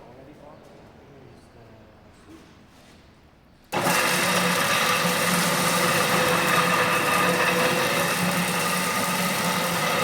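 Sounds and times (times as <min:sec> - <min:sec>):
concrete grinder humming: 0:03.8 - 0:10.0.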